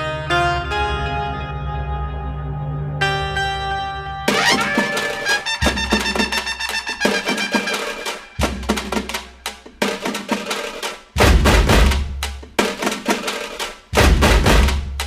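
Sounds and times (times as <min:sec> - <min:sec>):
music with drum beat and bass: 0:04.3 - 0:15.0.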